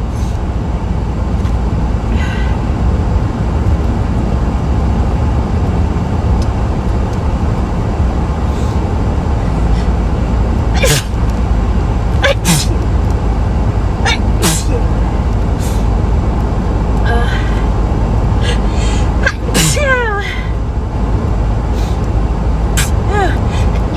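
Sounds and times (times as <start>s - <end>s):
steady low rumble: 0.0s - 23.9s
woman sneezing: 10.8s - 11.2s, 12.2s - 12.8s, 14.1s - 14.8s, 18.4s - 20.4s, 22.8s - 23.9s.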